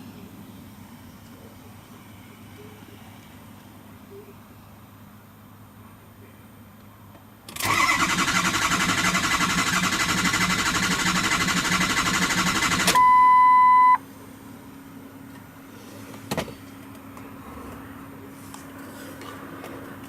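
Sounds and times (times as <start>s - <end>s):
diesel engine cranking: 7.5s - 13.1s
loud steady beep: 12.9s - 14.0s.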